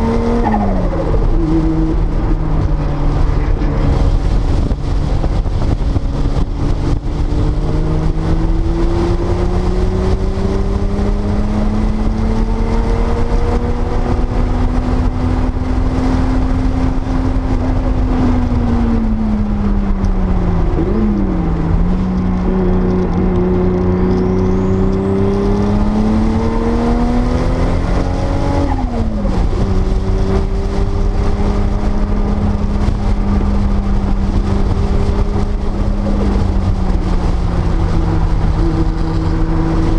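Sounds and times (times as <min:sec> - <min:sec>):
constant low rumble: 0:00.0 - 0:39.9
race car engine revving: 0:00.0 - 0:39.9.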